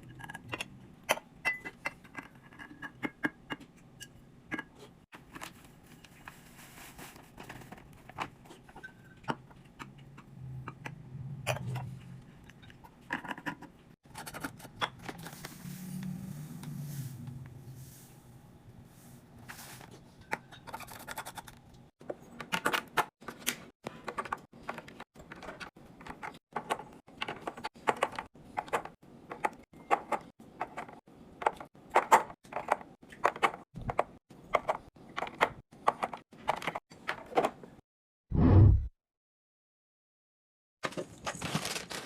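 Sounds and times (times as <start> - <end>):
packaging rustling: 40.8 - 42.0.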